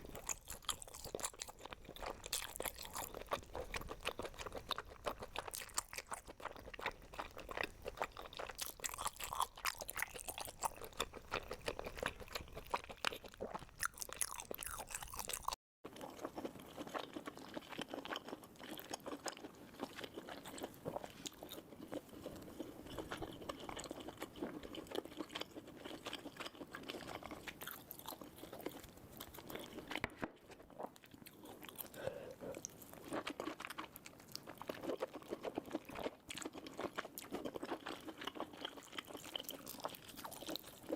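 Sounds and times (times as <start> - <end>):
crunchy chewing of food: 0.0 - 40.9.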